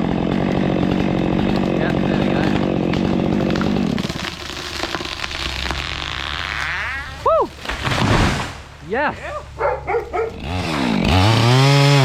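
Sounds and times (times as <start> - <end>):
chainsaw running: 0.0 - 7.2, 9.7 - 12.0
snapping and crackling: 0.2 - 8.7.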